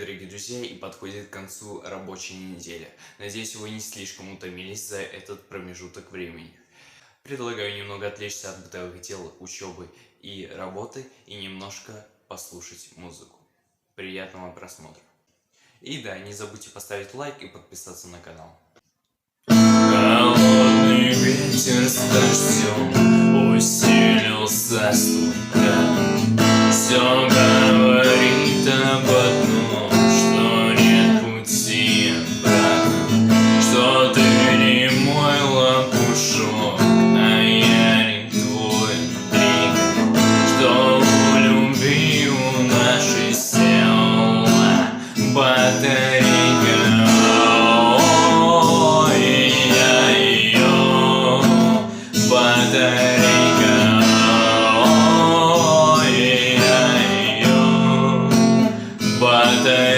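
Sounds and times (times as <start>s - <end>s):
person singing: 19.5s - 59.9s
strummed acoustic guitar: 19.5s - 59.9s.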